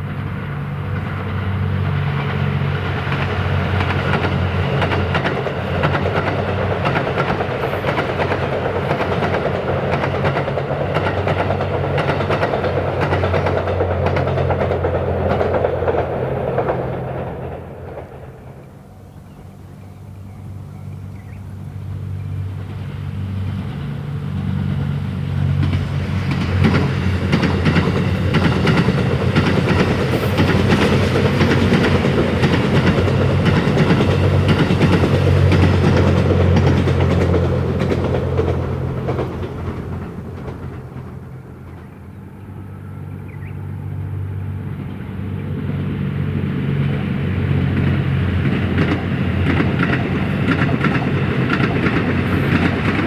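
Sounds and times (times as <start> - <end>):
train wheels clicking over rail joints: 0.0 - 19.3, 21.9 - 53.0
diesel engines humming: 0.0 - 53.0.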